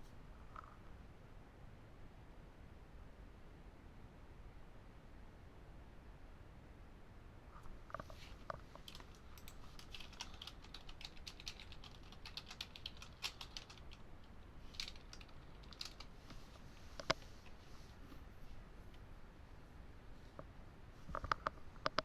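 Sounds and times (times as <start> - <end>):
keyboard key clicks: 8.8 - 14.0.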